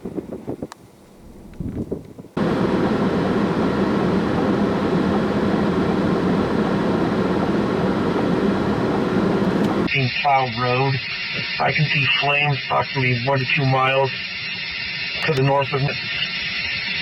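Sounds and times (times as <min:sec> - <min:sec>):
vehicle road and engine noise: 0:00.0 - 0:09.9
wind buffeting microphone: 0:00.0 - 0:09.9.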